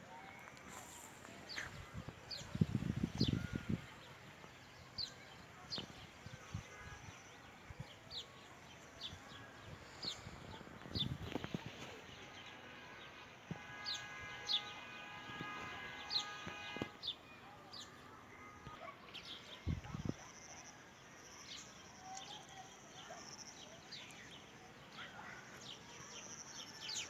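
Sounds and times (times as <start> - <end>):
long held bird call: 11.3 - 18.8.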